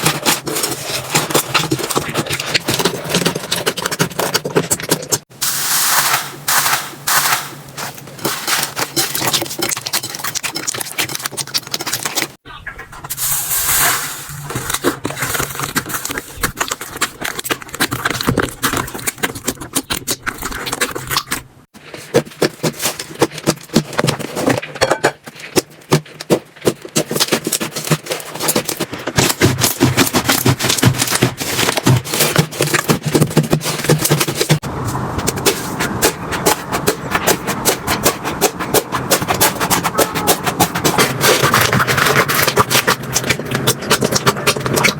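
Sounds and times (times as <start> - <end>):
crackling and popping of air: 0.0 - 44.9.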